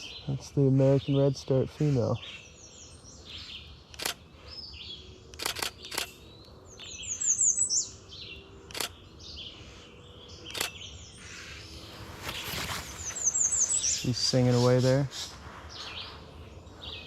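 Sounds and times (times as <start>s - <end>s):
high thin birdsong: 0.0s - 17.0s
camera shutter firing: 4.0s - 4.2s, 5.3s - 6.2s, 8.7s - 9.0s, 10.5s - 10.8s.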